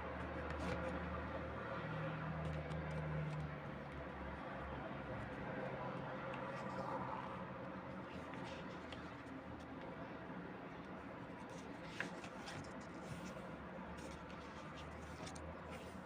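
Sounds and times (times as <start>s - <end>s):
soft clicks of cd case: 8.2s - 10.0s, 10.8s - 15.8s.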